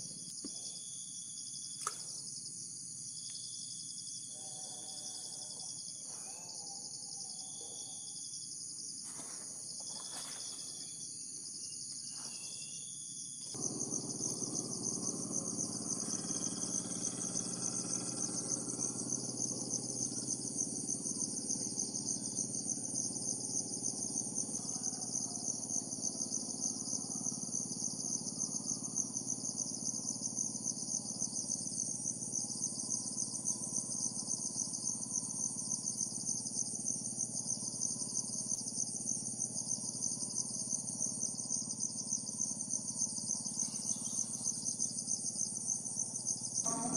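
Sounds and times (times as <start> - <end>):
insects chirping in pulses: 0.0 - 46.9
low steady droning: 13.5 - 24.8, 43.2 - 46.9.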